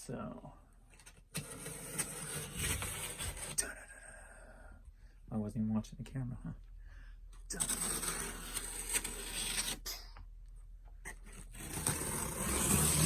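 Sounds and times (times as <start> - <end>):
cardboard box tape scraping: 1.0 - 3.6, 7.5 - 10.0, 11.1 - 13.0.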